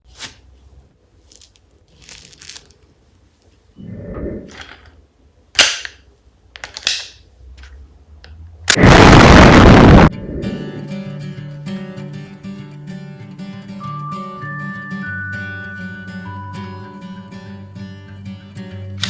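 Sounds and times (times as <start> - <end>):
toy gun clicks and snaps: 5.6 - 6.0, 6.6 - 7.2.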